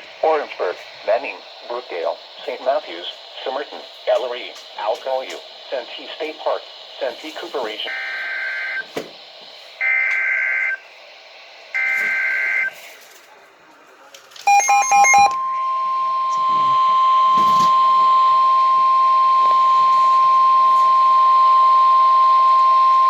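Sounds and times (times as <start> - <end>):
steady warning alarm tone: 0.2 - 8.9, 9.6 - 11.0, 11.7 - 12.8, 14.5 - 23.0
electronic beeps: 14.5 - 21.1.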